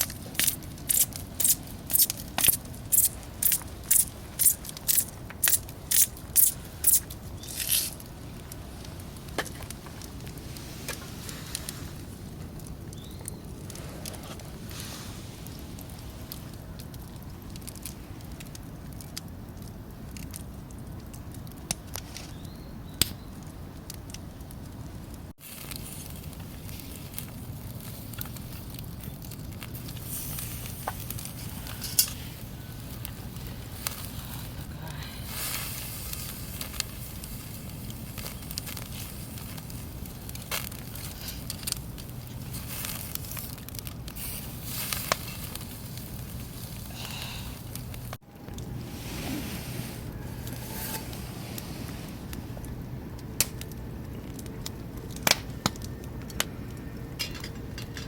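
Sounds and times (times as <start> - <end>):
campfire crackling and popping: 0.0 - 58.0
steady low rumble: 38.8 - 58.0.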